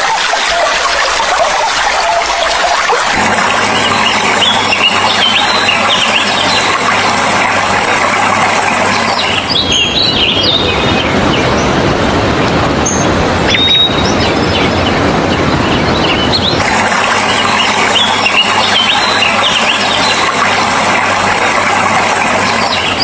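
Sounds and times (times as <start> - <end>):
birds chirping: 0.0 - 11.8, 12.8 - 23.0
running water rushing: 0.0 - 23.0
whistled bird note: 3.7 - 7.0, 12.9 - 14.7, 17.3 - 20.4.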